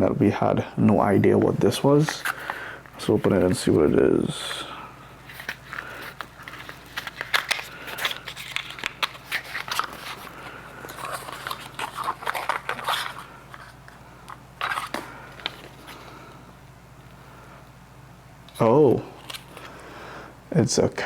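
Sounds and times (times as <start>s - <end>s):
packaging crinkling: 5.2s - 16.1s.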